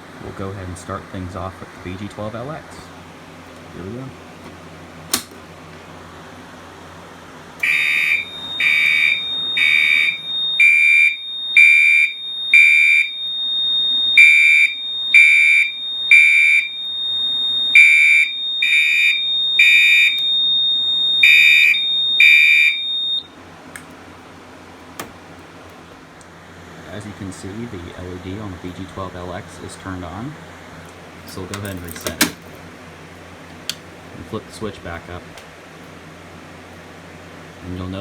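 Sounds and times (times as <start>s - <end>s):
pull station click: 4.5s - 5.4s, 31.3s - 32.6s
loud horn beeps: 7.6s - 16.9s, 17.6s - 23.3s
high-pitched whine: 7.6s - 23.4s.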